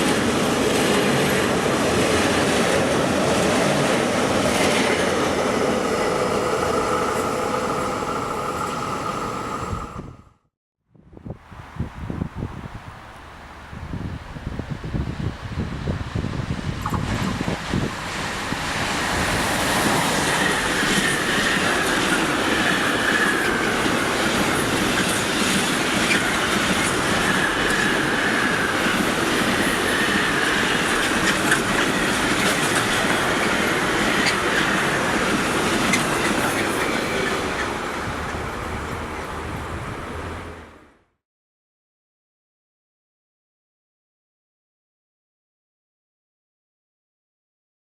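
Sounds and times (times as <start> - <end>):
train wheels clattering over rail joints: 18.8 - 38.5.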